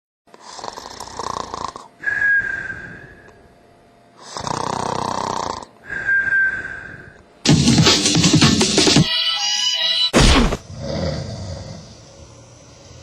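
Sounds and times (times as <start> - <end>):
man fake snoring: 0.4 - 1.9, 4.2 - 6.5, 10.6 - 12.1
high whistle on out-breath: 2.0 - 3.4, 5.8 - 7.2.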